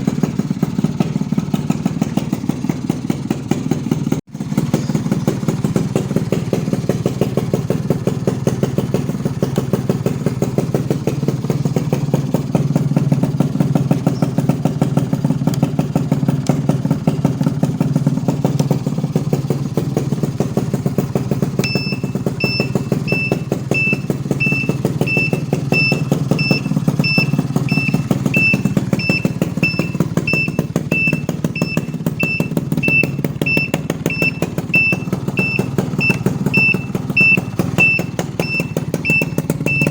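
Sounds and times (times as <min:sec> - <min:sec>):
motorcycle engine idling: 0:00.0 - 0:39.9
high electronic beeps: 0:21.6 - 0:39.9.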